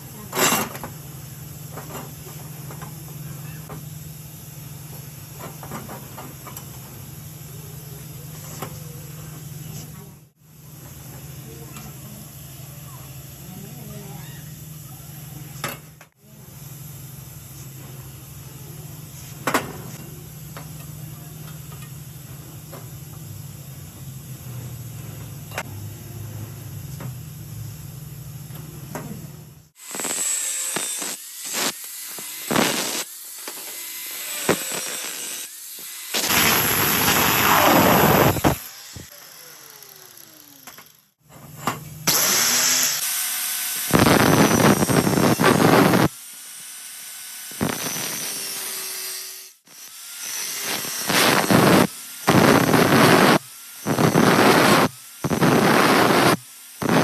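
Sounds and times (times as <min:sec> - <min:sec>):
angle grinder cutting steel: 0:29.8 - 0:41.2, 0:42.0 - 0:57.0.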